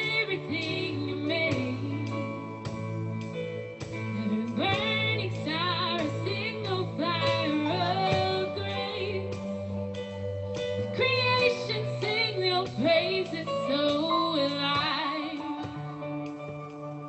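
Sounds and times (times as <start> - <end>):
woman singing with vibrato: 0.0 - 2.5, 4.2 - 9.4, 10.9 - 16.2
sustained instrumental accompaniment: 0.0 - 17.0.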